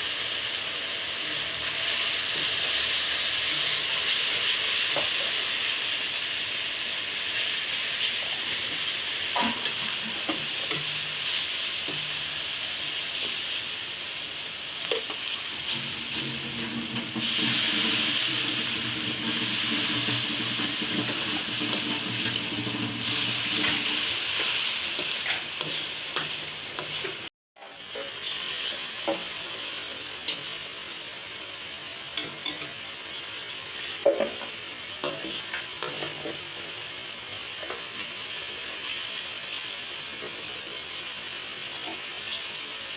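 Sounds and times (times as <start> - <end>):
food sizzling in a pan: 0.0 - 42.9
spatula tapping and scraping: 24.4 - 27.2.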